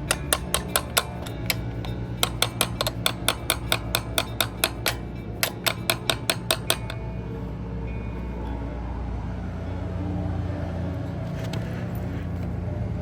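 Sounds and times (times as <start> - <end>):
hammer tapping metal punch: 0.0 - 7.4.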